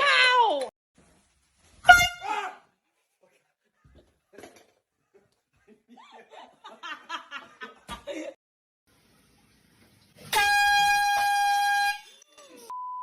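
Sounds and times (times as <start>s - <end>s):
person laughing: 5.6s - 8.4s
air horn blast: 10.3s - 12.1s.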